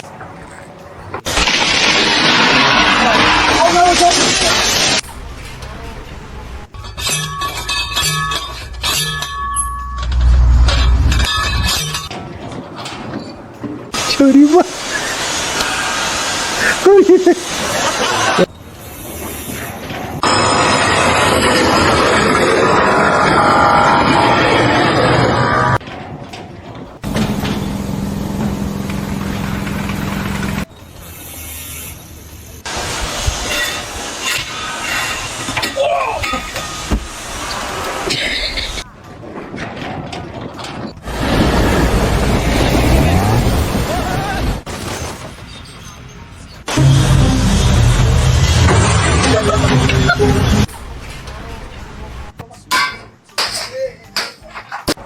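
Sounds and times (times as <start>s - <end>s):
metallic clanging strikes: 5.0s - 13.1s, 46.6s - 51.5s
heavy low rumble: 7.6s - 12.1s, 46.7s - 52.3s
engine humming: 27.0s - 30.7s.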